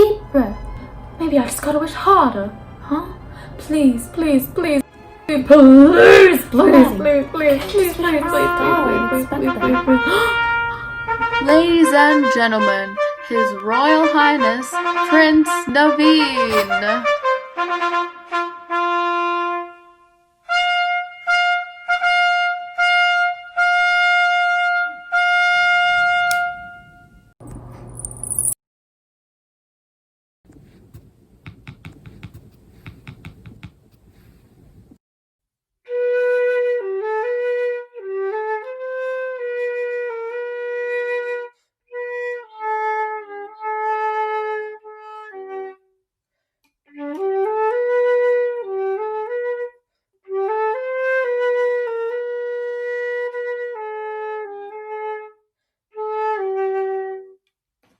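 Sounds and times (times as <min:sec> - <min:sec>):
flute melody: 0:04.8 - 0:27.2, 0:35.9 - 0:45.9, 0:46.9 - 0:55.3, 0:56.0 - 0:57.4
low rustling noise: 0:30.5 - 0:35.0.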